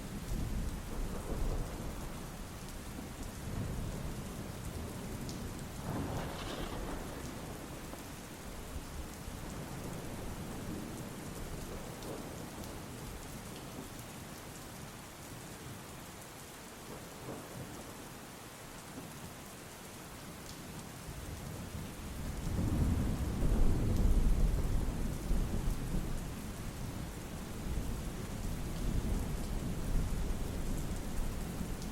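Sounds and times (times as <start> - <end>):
steady rain falling: 0.0 - 31.9
low rumble of thunder: 0.1 - 13.3, 21.2 - 31.9.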